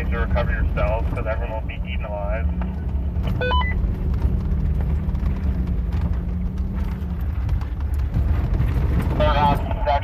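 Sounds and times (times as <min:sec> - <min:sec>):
engine and tyre rumble: 0:00.0 - 0:10.0
knocks and rattles from bumps: 0:02.4 - 0:10.0.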